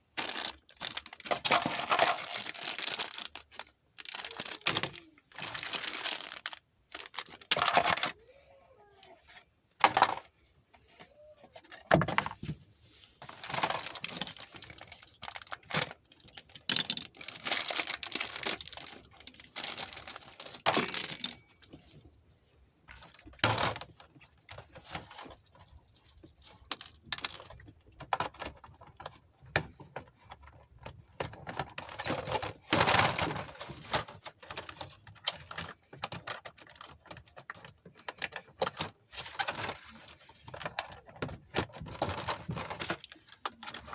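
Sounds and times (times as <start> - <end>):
packaging rustling: 0.2 - 8.2, 13.2 - 21.7
plastic parts clicking: 23.0 - 43.9.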